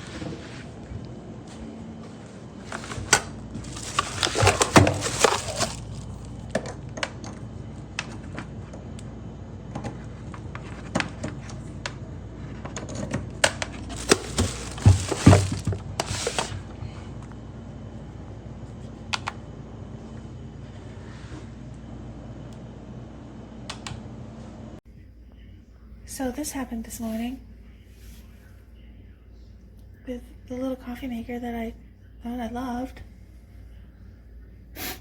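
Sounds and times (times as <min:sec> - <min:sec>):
crinkling and rustling: 0:00.0 - 0:07.4, 0:12.8 - 0:16.7
objects clicking and knocking: 0:02.8 - 0:07.4, 0:13.0 - 0:16.6.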